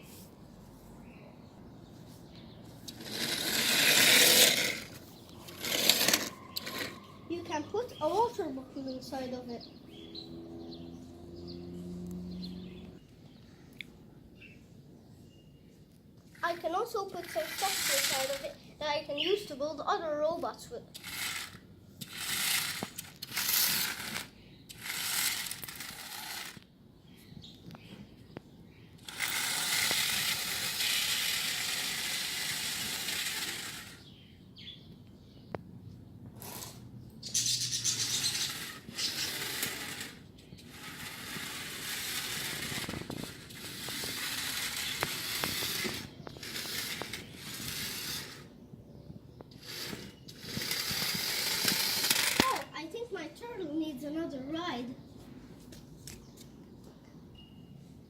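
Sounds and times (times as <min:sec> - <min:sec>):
remote-control car sliding and rattling: 0:02.6 - 0:09.6, 0:16.3 - 0:19.8, 0:20.4 - 0:26.7, 0:29.0 - 0:34.2, 0:36.3 - 0:48.5, 0:49.5 - 0:52.8
small plastic parts rustling and clattering: 0:49.6 - 0:52.7.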